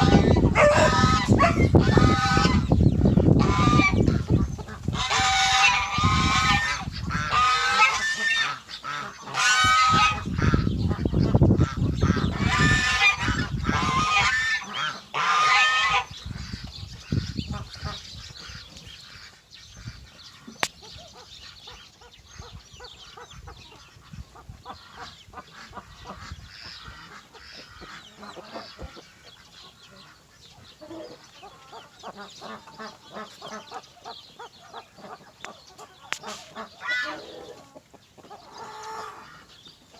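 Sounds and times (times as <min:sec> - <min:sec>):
poultry honking squawks: 0:00.0 - 0:19.3, 0:30.8 - 0:37.6
poultry clucking: 0:00.0 - 0:39.9.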